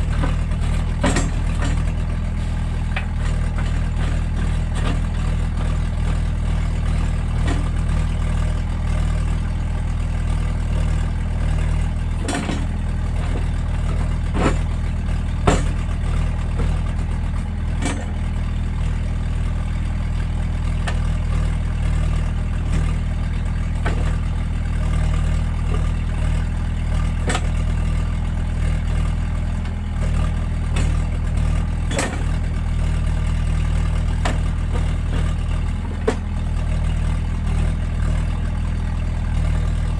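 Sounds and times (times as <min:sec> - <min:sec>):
excavator diesel engine running: 0:00.0 - 0:39.9
sharp knocks: 0:15.4 - 0:15.8.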